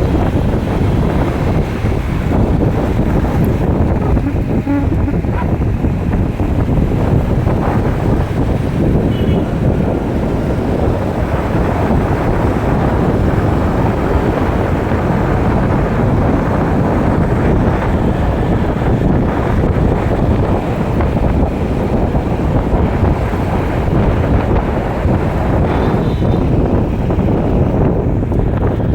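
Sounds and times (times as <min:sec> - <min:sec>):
wind buffeting microphone: 0:00.0 - 0:28.9.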